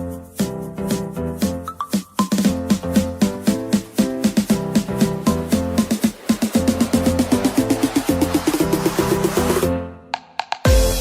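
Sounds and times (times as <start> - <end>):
electronic dance music: 0.3 - 10.0.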